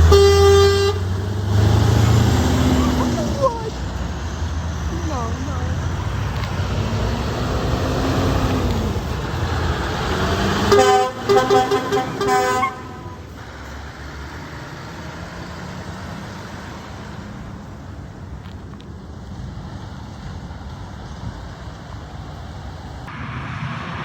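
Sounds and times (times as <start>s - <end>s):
truck air horn blasts: 0.0s - 3.3s, 10.6s - 13.3s
traffic noise: 0.0s - 24.0s
vehicle engine and road noise: 0.0s - 24.0s.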